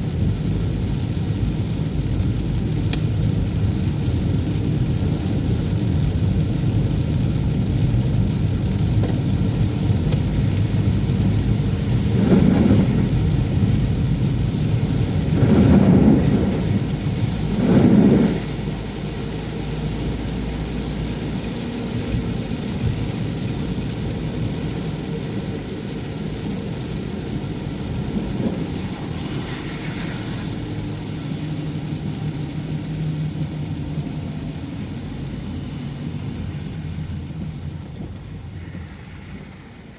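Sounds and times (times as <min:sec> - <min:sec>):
car engine and tyres on wet road: 0:00.0 - 0:39.9
heavy rain: 0:00.0 - 0:39.9
vehicle hissing past: 0:09.4 - 0:19.6, 0:27.8 - 0:39.9.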